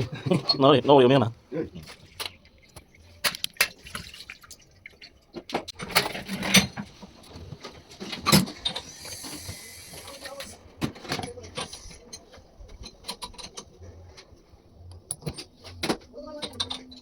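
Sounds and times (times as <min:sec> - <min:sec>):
tools clicking and knocking: 0:10.8 - 0:14.3, 0:14.9 - 0:17.0.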